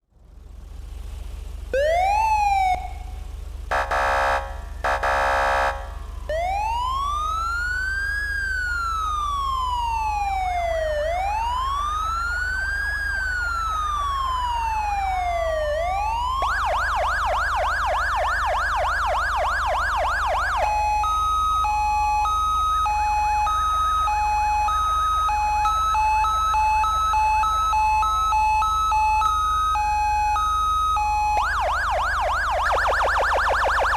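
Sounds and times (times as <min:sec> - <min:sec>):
electronic police siren: 0:01.8 - 0:03.1, 0:03.7 - 0:33.9
buzzing horn blasts: 0:03.7 - 0:06.2.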